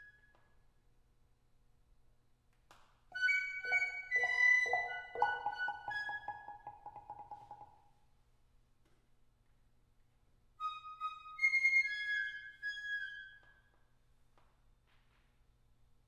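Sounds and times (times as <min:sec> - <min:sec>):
whistled flute-like notes: 0:03.2 - 0:07.6, 0:10.6 - 0:13.8
fast mallet tremolo: 0:03.6 - 0:07.7.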